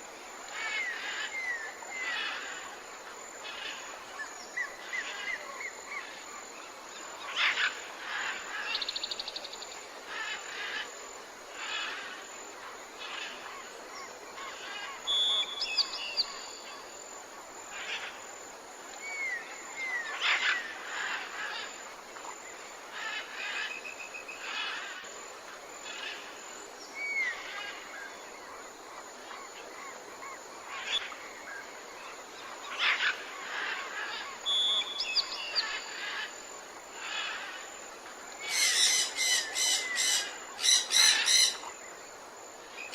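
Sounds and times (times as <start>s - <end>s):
steady soft hiss: 0.0s - 42.9s
birds chirping and singing: 38.4s - 41.6s.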